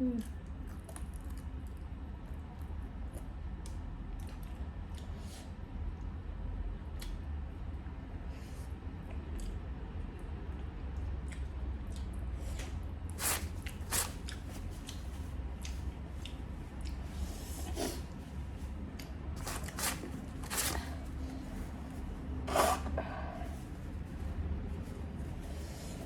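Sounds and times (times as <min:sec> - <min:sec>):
chewing food: 0:00.0 - 0:05.2, 0:07.0 - 0:07.2, 0:09.0 - 0:22.0
steady low hum: 0:00.0 - 0:26.0.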